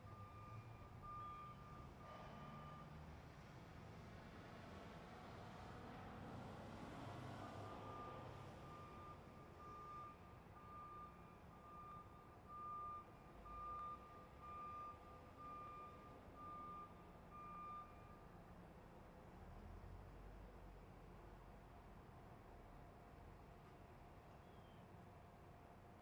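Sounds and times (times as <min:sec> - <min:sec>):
truck reversing alarm beeping: 0:00.0 - 0:03.0, 0:07.6 - 0:18.4.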